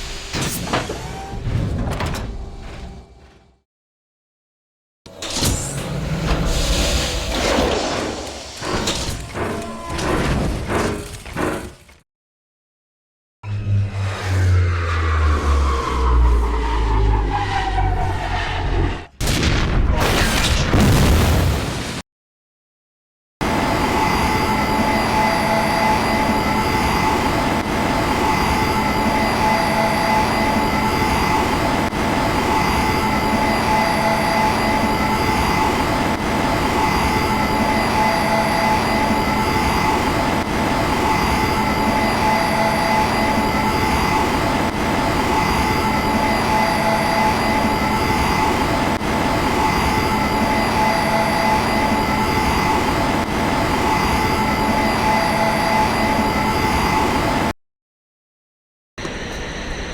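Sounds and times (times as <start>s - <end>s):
engine drone with high whine: 13.4s - 19.1s, 23.4s - 57.5s, 59.0s - 59.9s.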